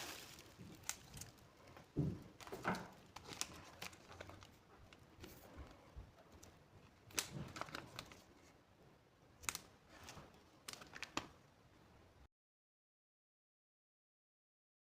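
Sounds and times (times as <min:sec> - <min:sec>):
packaging rustling: 0:00.0 - 0:08.5, 0:09.4 - 0:11.4.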